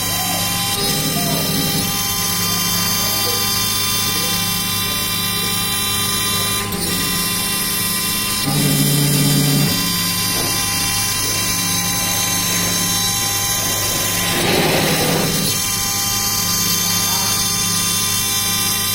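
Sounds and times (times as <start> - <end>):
router spindle whine: 0.0 - 18.9
low motor hum: 6.5 - 18.4.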